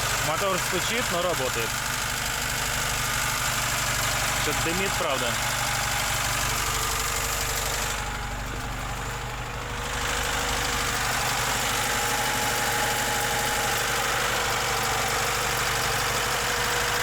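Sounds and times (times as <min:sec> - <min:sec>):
car engine idling with a knock: 0:00.0 - 0:17.0.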